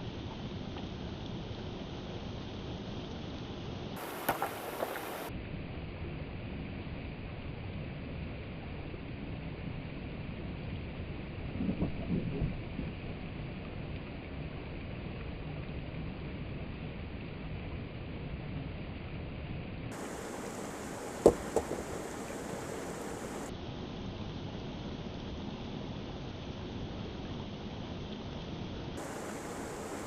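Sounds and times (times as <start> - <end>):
waterfall rushing: 4.0 - 5.3, 19.9 - 23.5, 29.0 - 30.0.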